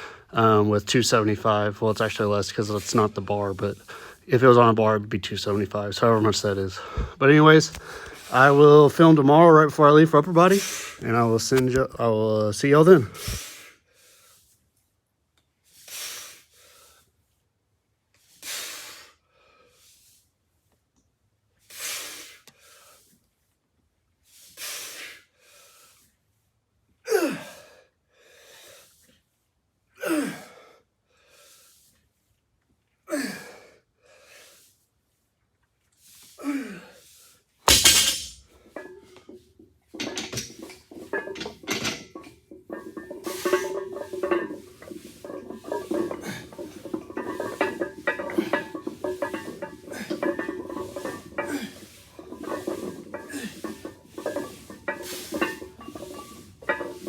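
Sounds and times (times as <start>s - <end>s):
forceful breaths: 6.8s - 8.3s
metal clanking and rattling: 37.7s - 57.0s.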